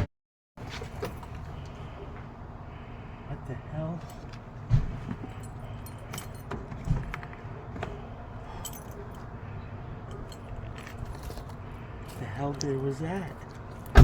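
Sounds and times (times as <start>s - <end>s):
van engine rumbling: 0.6s - 14.0s
heavy thumps on van body: 4.6s - 5.3s.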